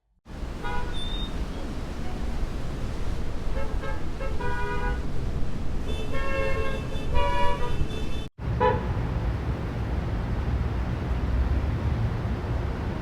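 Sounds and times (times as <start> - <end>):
road traffic rumble: 0.3 - 13.0
car horns honking: 3.6 - 5.1, 5.8 - 9.0.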